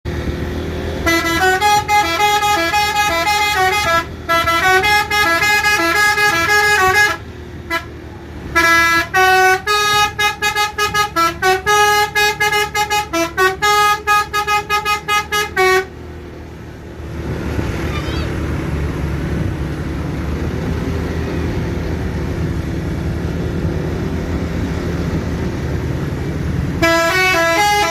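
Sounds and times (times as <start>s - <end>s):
bus musical horn melody: 0.9s - 16.1s, 26.0s - 27.9s.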